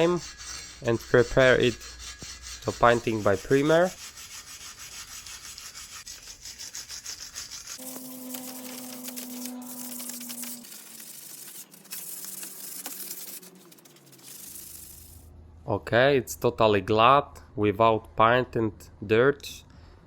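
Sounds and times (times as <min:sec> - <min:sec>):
sandpaper rubbing on metal: 0:00.0 - 0:15.3.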